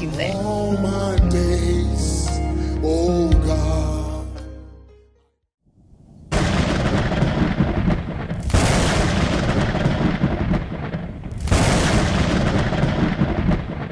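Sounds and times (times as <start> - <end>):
loud rumbling: 6.2 - 13.9.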